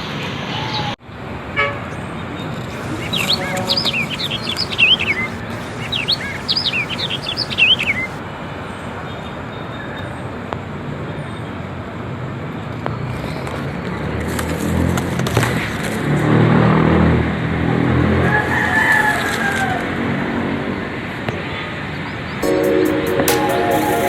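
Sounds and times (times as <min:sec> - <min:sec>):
background noise: 0:02.6 - 0:08.4
songbird chirping: 0:02.7 - 0:08.2.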